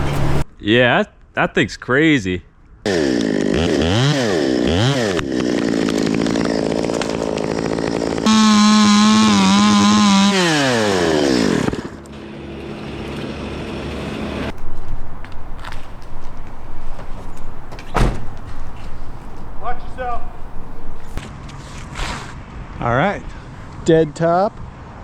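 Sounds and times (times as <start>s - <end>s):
chainsaw revving: 2.9s - 11.7s
sharp knocks: 14.5s - 21.2s.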